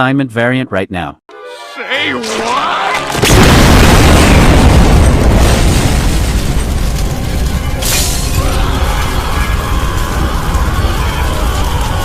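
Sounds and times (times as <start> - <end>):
music: 1.3 - 3.2
loud rumbling boom: 3.2 - 12.0.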